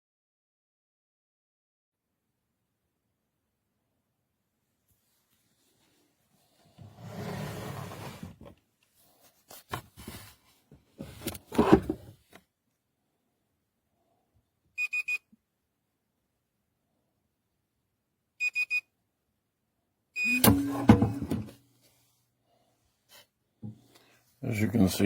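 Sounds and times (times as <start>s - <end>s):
electronic lock beeping: 20.2s - 21.4s.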